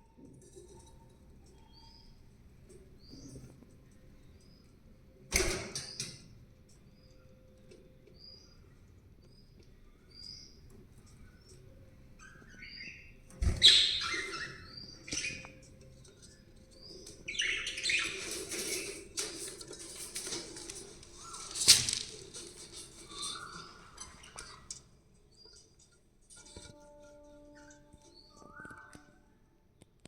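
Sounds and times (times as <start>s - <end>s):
budgerigars chirping: 12.2s - 15.6s, 16.3s - 19.0s.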